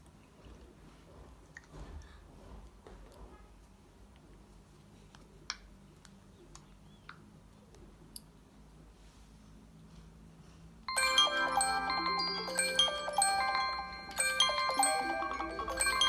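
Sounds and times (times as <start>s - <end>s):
smartphone alarm chiming melody: 10.9s - 16.0s.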